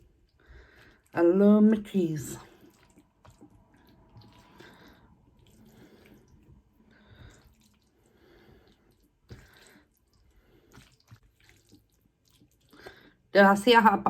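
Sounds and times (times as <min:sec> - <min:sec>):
person chewing: 0:02.4 - 0:13.2.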